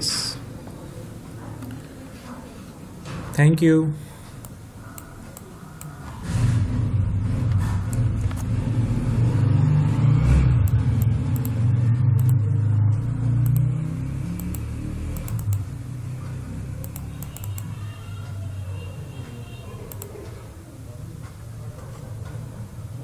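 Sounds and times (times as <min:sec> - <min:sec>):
faint clicks: 0:19.3 - 0:20.4.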